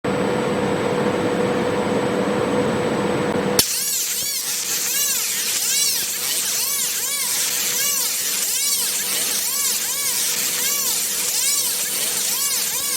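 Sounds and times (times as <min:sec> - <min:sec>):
laser cleaner hissing and whining: 0:03.6 - 0:12.9.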